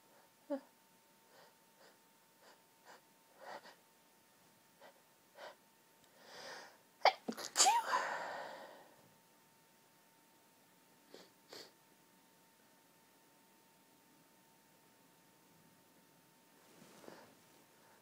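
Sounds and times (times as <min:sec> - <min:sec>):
long drawn-in breath: 0:05.4 - 0:06.8, 0:08.0 - 0:09.0
woman sneezing: 0:07.1 - 0:08.3.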